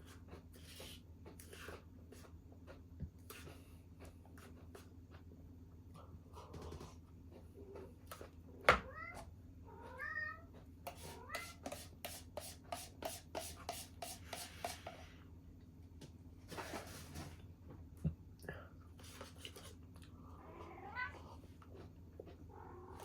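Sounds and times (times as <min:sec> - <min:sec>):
cat meowing: 0:08.7 - 0:10.5, 0:20.4 - 0:21.4.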